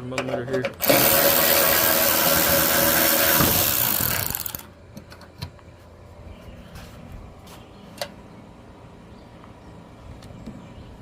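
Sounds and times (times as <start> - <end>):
power tool motor whine: 0.8 - 4.6.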